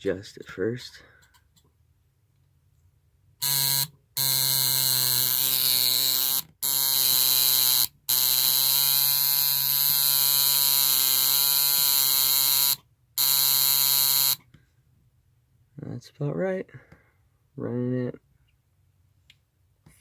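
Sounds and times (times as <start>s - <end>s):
tattoo machine buzzing: 3.4s - 14.4s.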